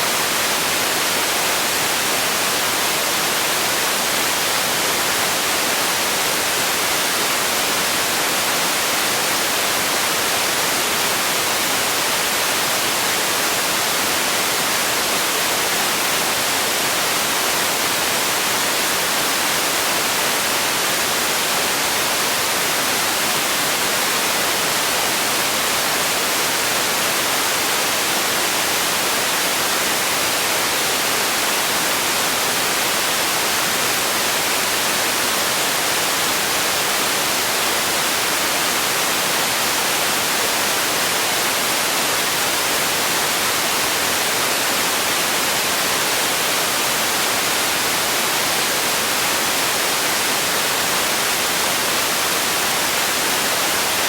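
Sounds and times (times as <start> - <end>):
white noise hiss: 0.0 - 54.0.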